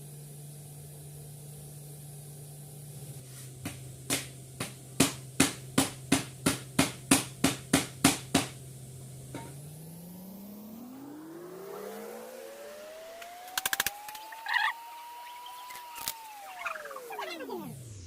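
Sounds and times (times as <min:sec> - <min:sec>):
steady low hum: 0:00.0 - 0:18.0
motor whine winding up: 0:09.7 - 0:18.0.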